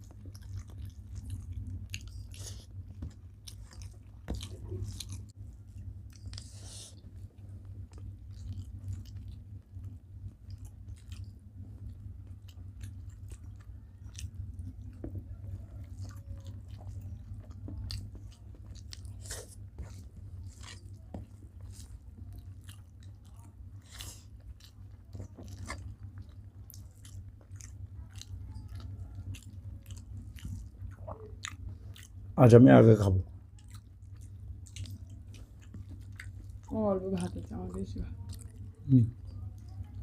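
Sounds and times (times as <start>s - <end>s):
chewing and mouth smacks: 0.0s - 32.4s, 33.1s - 40.0s
steady low hum: 0.0s - 40.0s.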